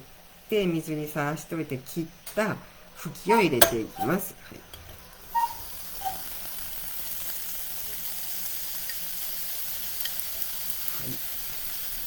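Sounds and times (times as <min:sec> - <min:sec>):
vegetables sizzling in a frying pan: 0:03.8 - 0:12.0.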